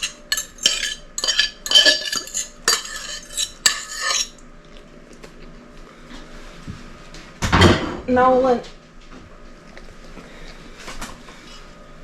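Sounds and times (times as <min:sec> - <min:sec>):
utensil scraping a bowl: 0:00.0 - 0:04.4.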